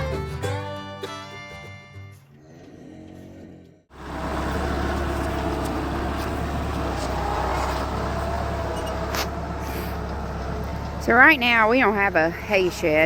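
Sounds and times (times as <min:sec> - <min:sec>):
vehicle engine droning: 0:03.6 - 0:13.0.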